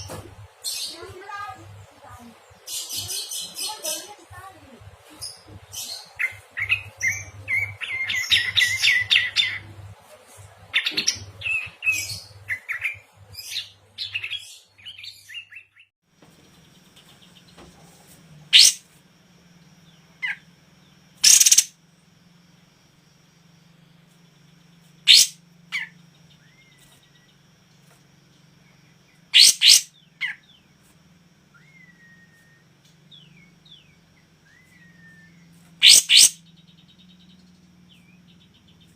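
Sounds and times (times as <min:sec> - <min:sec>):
steady low hum: 0:00.0 - 0:15.3, 0:16.1 - 0:38.9
songbirds warbling and trilling: 0:00.0 - 0:38.9
sharp bird calls: 0:05.3 - 0:09.7, 0:18.5 - 0:18.9, 0:19.6 - 0:21.8, 0:24.5 - 0:27.4, 0:28.6 - 0:30.7, 0:31.5 - 0:38.9.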